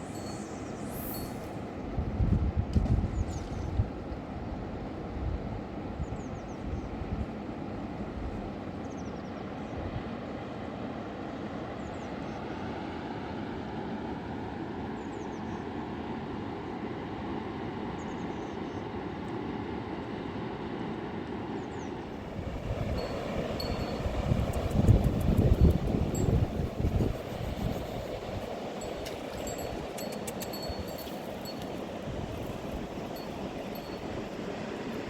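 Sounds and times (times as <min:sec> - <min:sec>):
faint high chirps: 0:00.0 - 0:01.6
river rushing: 0:22.1 - 0:35.0.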